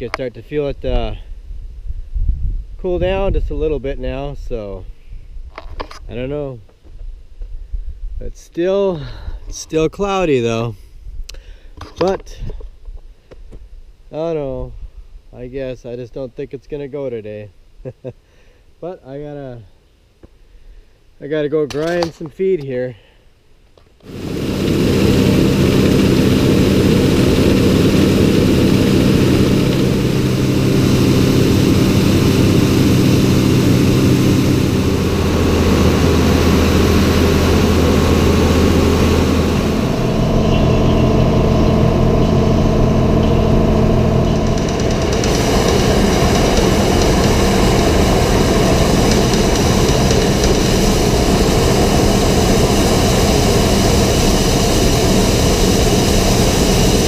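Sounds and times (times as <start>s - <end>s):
feed grinder droning: 24.1s - 57.0s.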